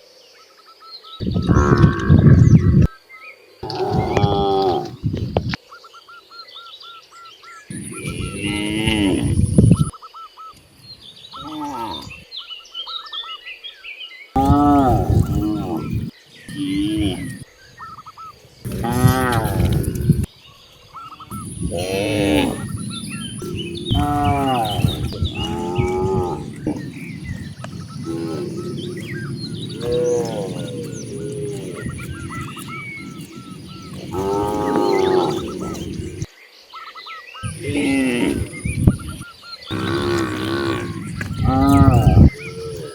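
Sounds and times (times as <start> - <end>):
small birds chirping: 0.0 - 42.9
cows mooing: 1.2 - 2.5, 3.6 - 5.0, 7.7 - 9.9, 11.4 - 12.2, 14.4 - 17.4, 18.7 - 20.3, 21.3 - 36.3, 37.4 - 42.9.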